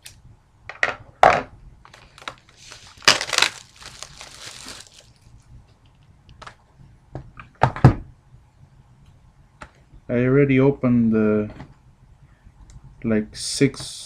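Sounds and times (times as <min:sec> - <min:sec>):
plastic wrapping crinkling and tearing: 0:01.9 - 0:05.4.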